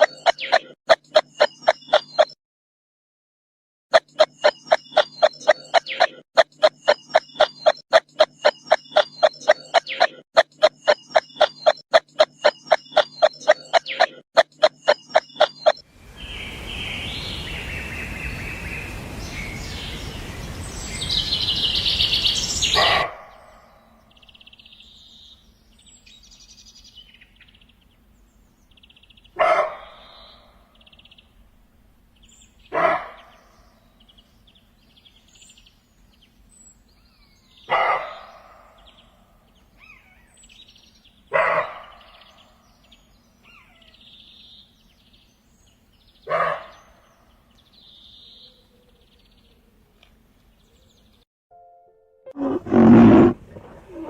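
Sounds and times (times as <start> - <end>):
birds chirping: 0.0 - 2.4, 3.9 - 31.4, 32.1 - 51.2, 52.3 - 54.0
animal calling: 52.3 - 54.0
deep animal call: 52.3 - 54.0.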